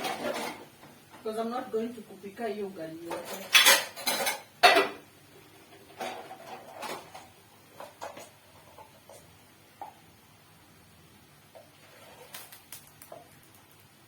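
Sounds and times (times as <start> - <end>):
metal pots and utensils clattering: 0.0 - 0.8, 3.0 - 5.1, 5.7 - 9.2.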